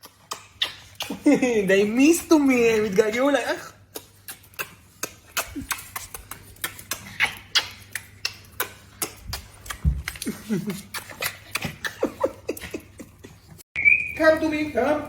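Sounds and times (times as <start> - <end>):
dogs whimpering and squeaking: 0.0 - 3.2, 4.1 - 8.2.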